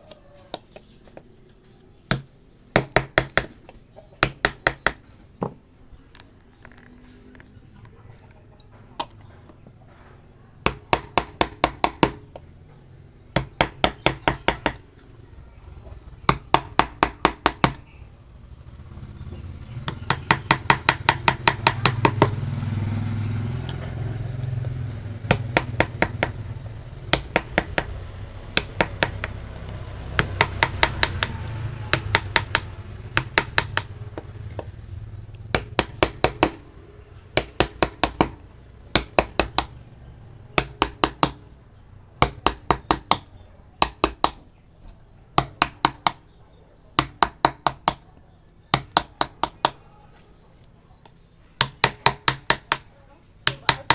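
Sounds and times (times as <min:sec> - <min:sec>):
mallet striking chisel: 0:02.1 - 0:03.6, 0:04.2 - 0:05.6, 0:10.6 - 0:12.5, 0:13.4 - 0:14.8, 0:15.9 - 0:17.8, 0:19.8 - 0:22.4, 0:25.3 - 0:26.4, 0:27.1 - 0:29.4, 0:30.1 - 0:34.8, 0:35.5 - 0:36.7, 0:37.4 - 0:39.8, 0:40.6 - 0:41.4, 0:42.2 - 0:44.5, 0:45.4 - 0:46.3, 0:47.0 - 0:48.0, 0:48.7 - 0:49.9, 0:51.6 - 0:53.9.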